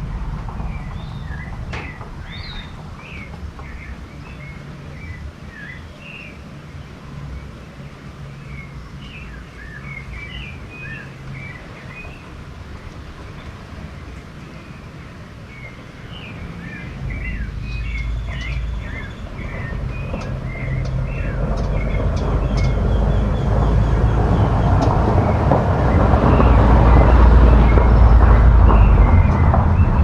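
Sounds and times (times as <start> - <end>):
low rumble: 0.0 - 5.3, 16.8 - 30.0
birds chirping: 0.0 - 30.0.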